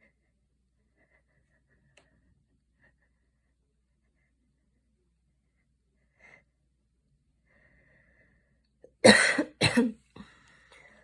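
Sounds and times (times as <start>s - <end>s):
faint breath: 7.4s - 8.6s, 10.2s - 11.0s
woman coughing: 9.0s - 10.0s.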